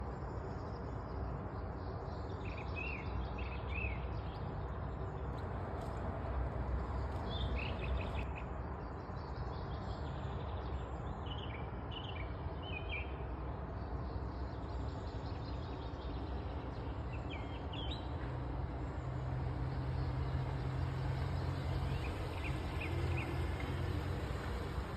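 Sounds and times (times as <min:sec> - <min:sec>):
small birds chirping: 0:14.1 - 0:24.9.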